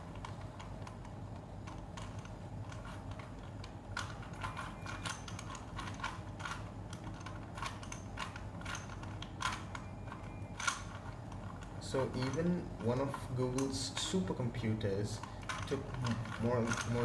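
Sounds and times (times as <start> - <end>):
steady low hum: 0.0 - 17.0.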